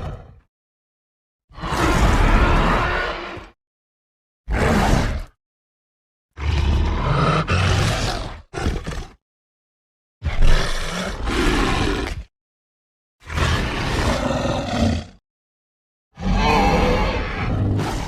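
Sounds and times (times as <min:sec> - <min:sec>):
creature roars: 0:01.5 - 0:03.6, 0:04.5 - 0:05.3, 0:06.4 - 0:09.2, 0:10.2 - 0:12.3, 0:13.2 - 0:15.2, 0:16.2 - 0:18.0.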